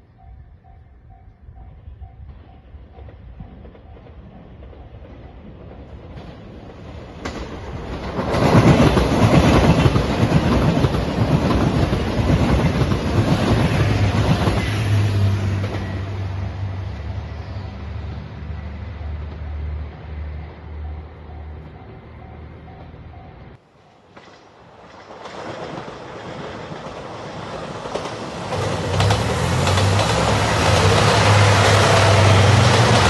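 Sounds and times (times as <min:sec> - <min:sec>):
train wheels clattering over rails: 0:02.9 - 0:16.2, 0:24.0 - 0:33.0
diesel engine hum: 0:28.6 - 0:33.0.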